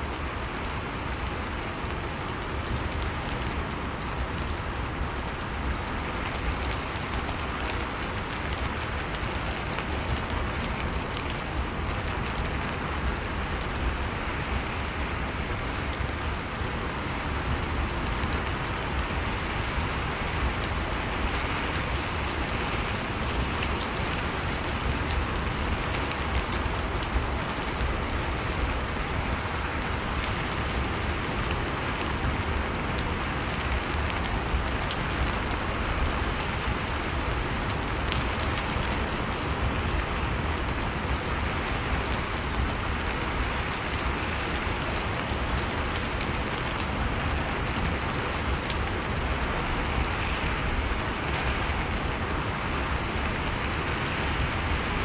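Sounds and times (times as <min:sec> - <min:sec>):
steady rain hiss: 0:00.0 - 0:55.0
rain drop ticks: 0:33.2 - 0:39.7.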